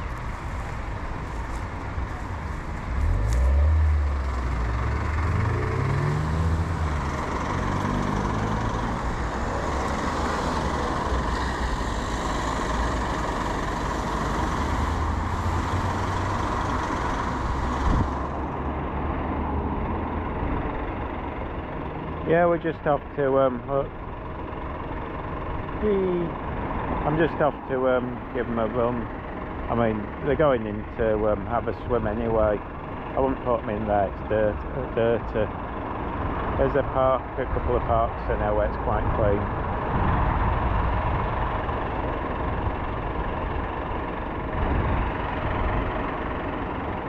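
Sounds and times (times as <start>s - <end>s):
engine speeding up: 0.0s - 22.6s
vehicle engines droning: 0.0s - 47.0s.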